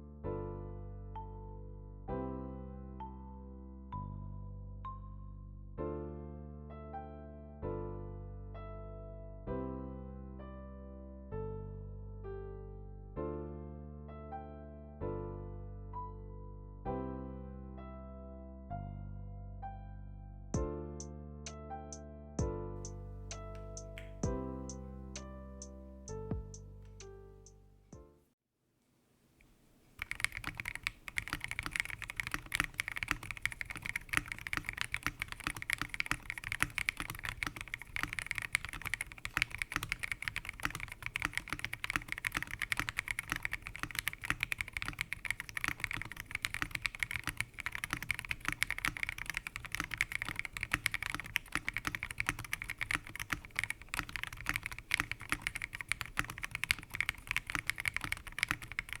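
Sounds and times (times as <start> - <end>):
fast typing on mechanical keyboard: 23.3 - 24.3, 30.0 - 59.0.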